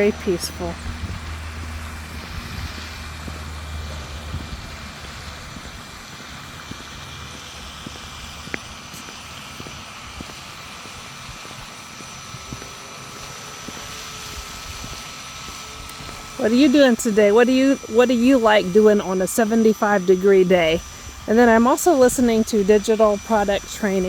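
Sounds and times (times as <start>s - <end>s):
low rumble: 0.1s - 6.0s.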